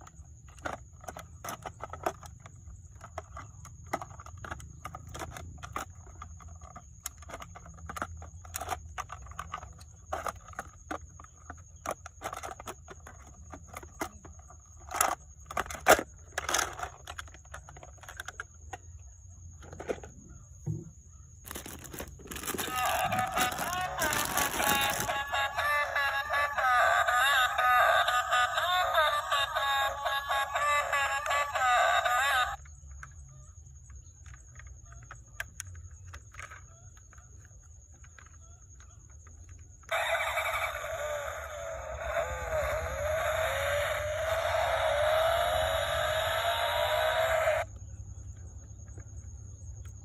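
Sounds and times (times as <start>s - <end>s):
toy packaging crinkling and clicking: 0.0s - 18.8s, 21.4s - 33.2s, 34.2s - 47.7s.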